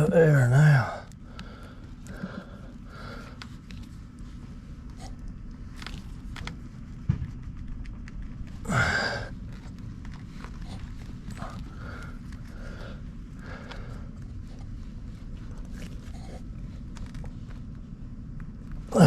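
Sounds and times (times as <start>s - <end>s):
low steady hum: 0.0s - 19.0s
man sighing: 8.6s - 9.3s.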